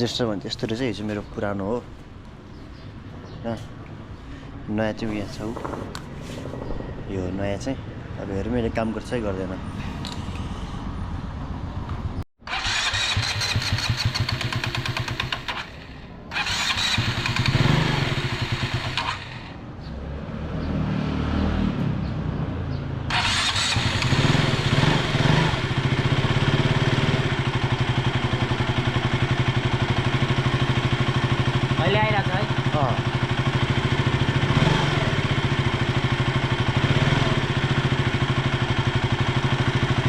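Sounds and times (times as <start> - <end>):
motorcycle engine revving: 12.4 - 22.4, 23.0 - 40.0.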